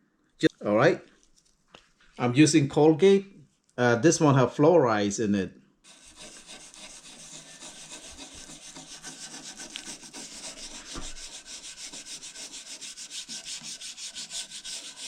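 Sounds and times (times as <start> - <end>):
toothbrush scrubbing metal surface: 5.9 - 15.0.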